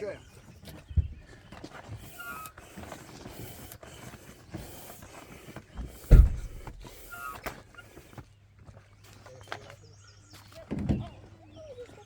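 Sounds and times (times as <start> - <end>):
air pump hissing: 1.8 - 8.2
loud low thump: 6.0 - 7.0.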